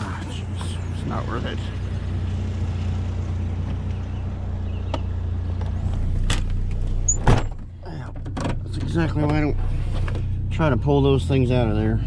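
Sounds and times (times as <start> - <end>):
truck engine idling: 0.0 - 7.1.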